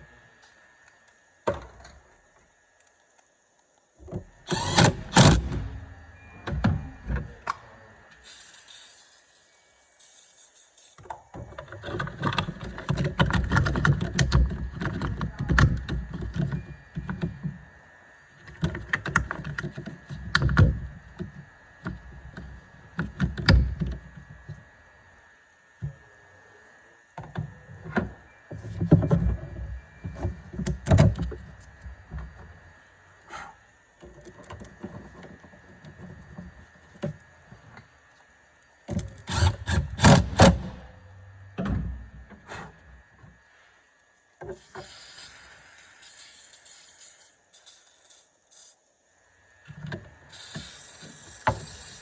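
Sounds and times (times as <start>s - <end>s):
short hiss: 8.2s - 11.0s, 44.5s - 48.8s, 50.3s - 52.0s.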